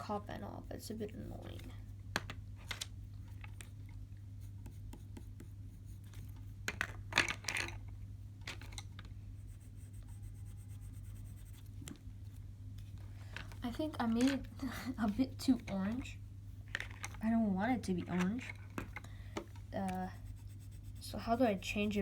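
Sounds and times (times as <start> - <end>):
pencil scratching on paper: 0.0 - 2.0, 4.3 - 6.6, 9.4 - 11.8, 19.8 - 22.0.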